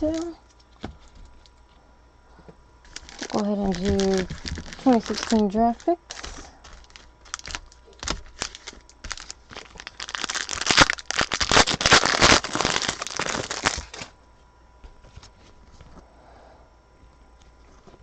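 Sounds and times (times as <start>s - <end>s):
wrappers crinkling: 0.0s - 1.6s, 2.8s - 14.2s.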